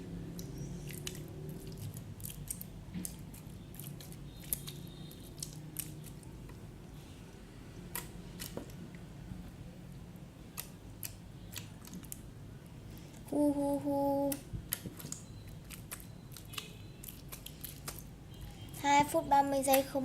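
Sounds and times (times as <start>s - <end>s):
slime clicking and popping: 0.3s - 6.2s, 7.9s - 8.8s, 10.5s - 12.3s, 14.3s - 18.1s.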